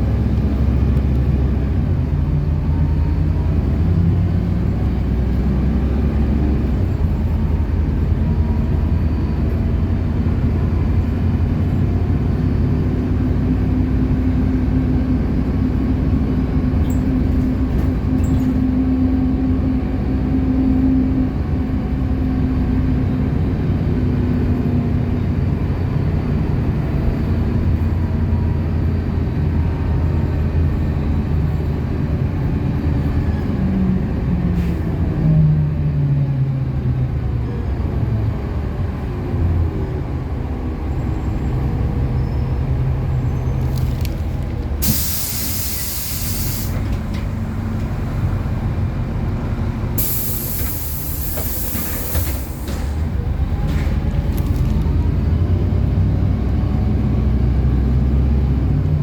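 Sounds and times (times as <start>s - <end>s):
bus engine running: 0.0s - 59.0s
compressed-air hiss: 44.8s - 46.8s, 50.0s - 52.9s.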